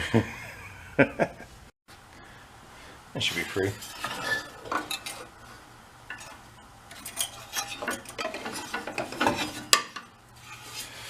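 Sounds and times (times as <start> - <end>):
metal tools clinking and rattling: 3.7 - 5.3, 6.1 - 10.0.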